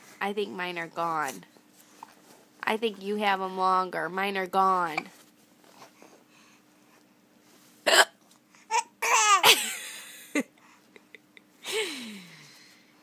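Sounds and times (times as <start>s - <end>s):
baby laughing and babbling: 8.7s - 9.5s.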